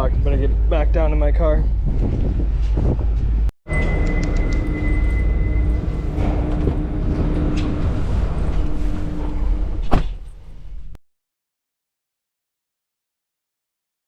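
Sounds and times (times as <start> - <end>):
ferry machinery droning: 0.0 - 11.0
heavy low rumble: 0.0 - 11.0.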